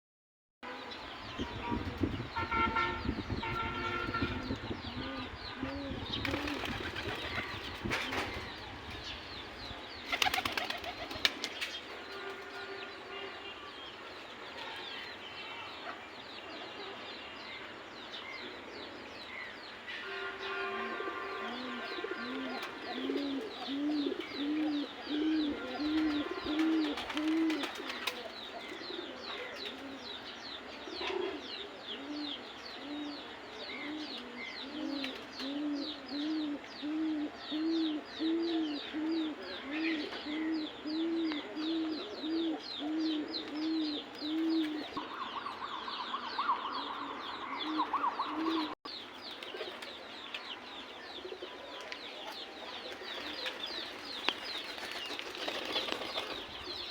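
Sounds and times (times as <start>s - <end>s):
pigeons cooing: 3.5s - 8.6s, 20.9s - 48.8s.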